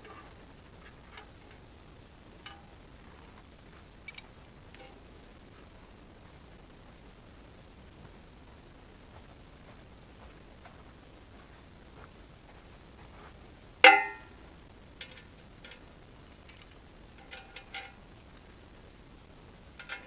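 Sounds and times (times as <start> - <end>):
metal-on-metal clang: 0.0 - 2.8, 13.8 - 14.4, 15.0 - 18.0, 19.8 - 20.0
light metallic clinks: 0.0 - 5.1, 13.8 - 14.4, 15.0 - 18.5, 19.8 - 20.0
background hiss: 0.0 - 20.0.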